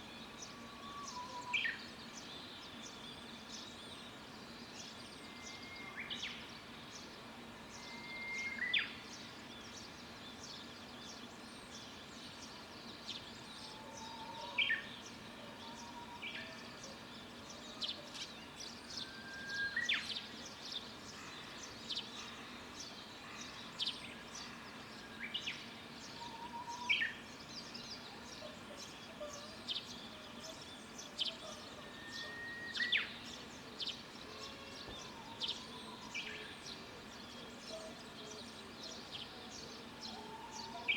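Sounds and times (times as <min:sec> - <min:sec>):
bird whistling song: 0:19.0 - 0:20.2, 0:31.8 - 0:33.2.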